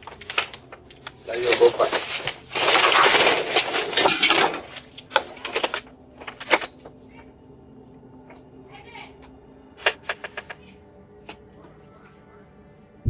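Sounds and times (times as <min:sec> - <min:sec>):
loud scuffling and rustling: 0:00.0 - 0:06.8.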